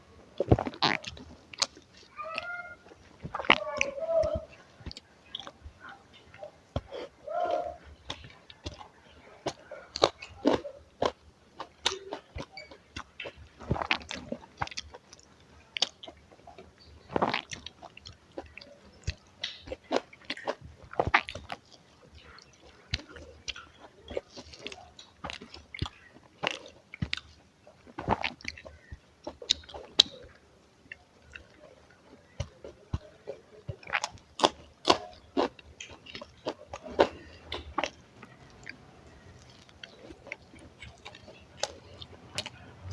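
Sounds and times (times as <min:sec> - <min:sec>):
crunchy chewing: 0:00.0 - 0:42.9.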